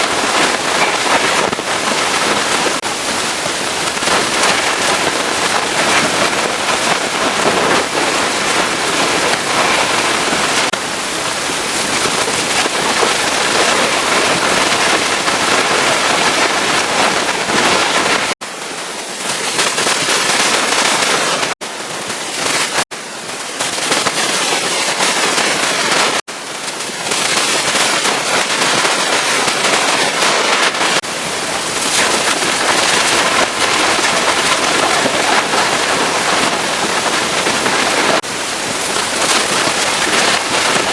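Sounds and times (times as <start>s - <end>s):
pressure washer spraying water: 0.0s - 18.3s, 29.3s - 40.9s.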